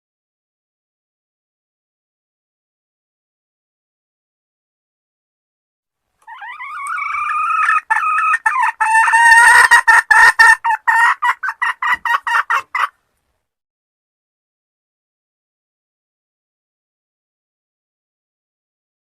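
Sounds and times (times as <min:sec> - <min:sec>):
hen calling: 0:06.2 - 0:12.9
hen clucking: 0:06.2 - 0:13.0.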